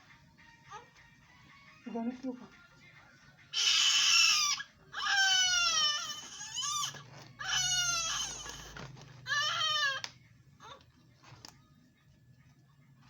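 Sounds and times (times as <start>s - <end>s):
newborn baby crying: 3.6s - 10.8s.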